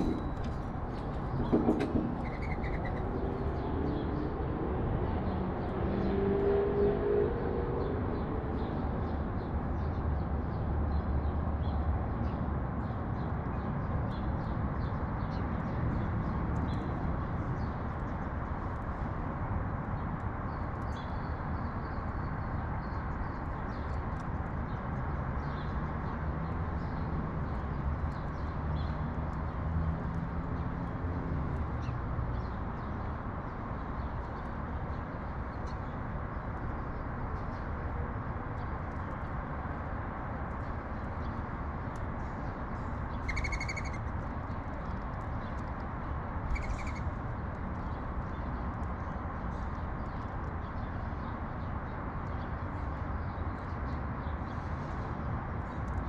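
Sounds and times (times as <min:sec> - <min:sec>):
sparrows chirping: 0:00.0 - 0:04.3, 0:19.9 - 0:29.7, 0:30.4 - 0:56.0
city traffic rumble: 0:00.0 - 0:56.0.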